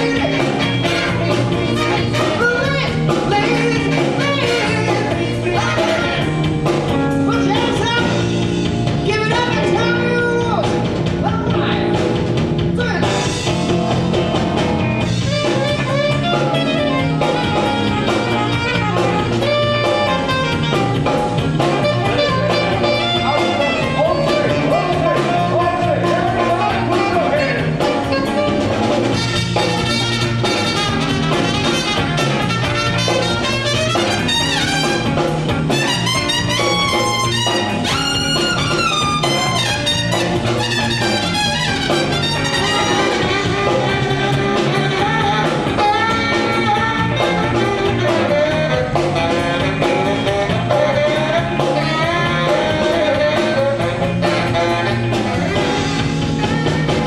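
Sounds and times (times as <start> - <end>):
person singing: 0.0 - 6.4, 21.9 - 28.5, 42.6 - 55.8
live band playing: 0.0 - 57.0.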